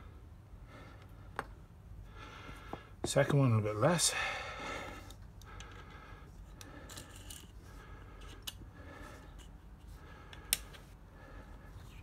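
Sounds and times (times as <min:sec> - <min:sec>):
handling small objects: 0:06.4 - 0:08.6.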